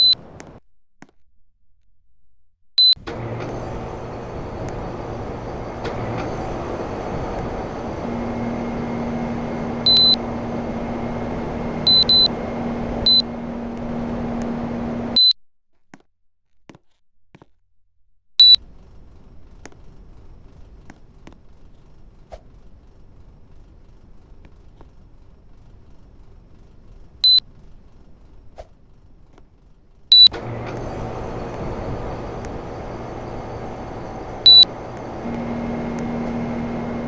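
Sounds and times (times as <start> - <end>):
short high beeps: 0.0 - 0.2, 9.9 - 10.2, 11.9 - 12.4, 13.1 - 13.3, 30.1 - 30.4, 34.5 - 34.7
low hum: 2.8 - 15.3, 18.6 - 37.0
air conditioner fan rushing: 3.0 - 15.2, 21.8 - 37.0.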